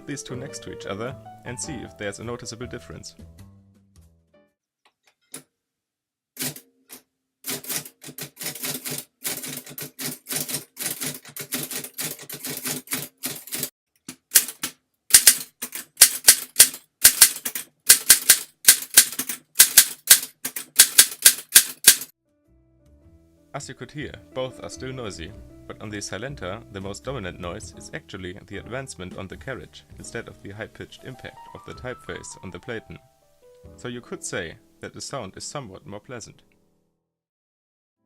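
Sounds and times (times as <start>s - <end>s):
typewriter carriage advance: 6.4s - 6.6s, 7.5s - 22.1s
typewriter keystrokes: 6.4s - 6.6s, 7.5s - 13.7s, 14.3s - 22.1s.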